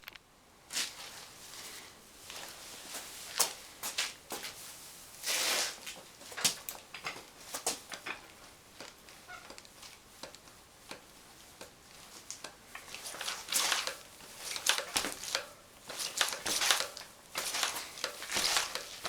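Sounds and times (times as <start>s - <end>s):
rustling: 11.4s - 19.0s.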